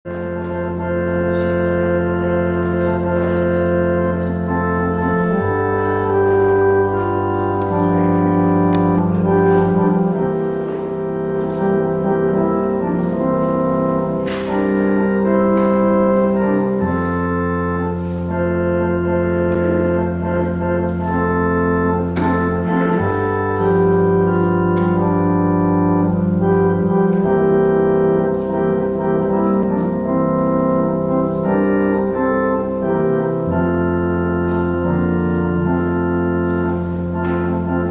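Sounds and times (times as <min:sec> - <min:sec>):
organ chords: 0:00.0 - 0:37.9.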